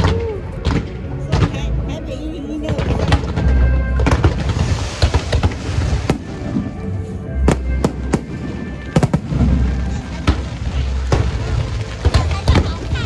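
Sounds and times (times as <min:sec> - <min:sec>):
fireworks bangs: 0:02.8 - 0:12.7
fireworks crackling: 0:02.8 - 0:13.0.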